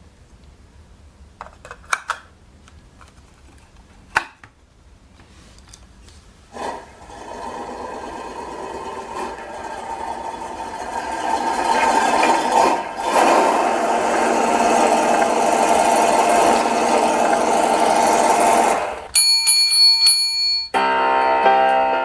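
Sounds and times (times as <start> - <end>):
small electric motor whirring: 6.6 - 19.1.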